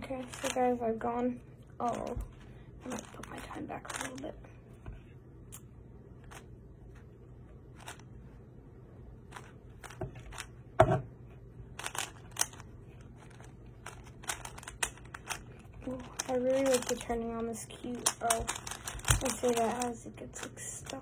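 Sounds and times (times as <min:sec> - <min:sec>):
puzzle cube plastic clicks: 0:09.3 - 0:10.5, 0:11.8 - 0:21.0.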